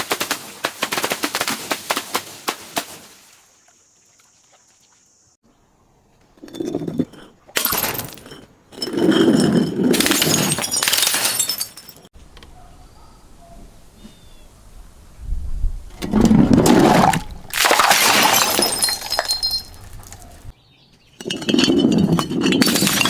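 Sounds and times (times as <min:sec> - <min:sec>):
glass crunching: 0:06.6 - 0:12.1, 0:17.0 - 0:20.5, 0:21.2 - 0:23.0.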